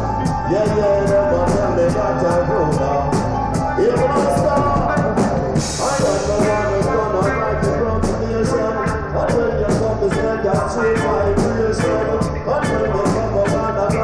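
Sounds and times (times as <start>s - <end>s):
reggae band playing: 0.0s - 14.0s.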